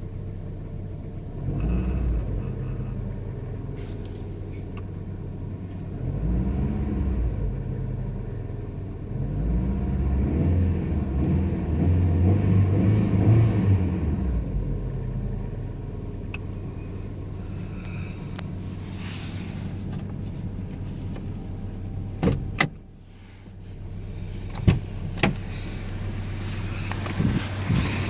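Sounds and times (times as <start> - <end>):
car engine idling: 0.0 - 9.2, 14.2 - 28.0.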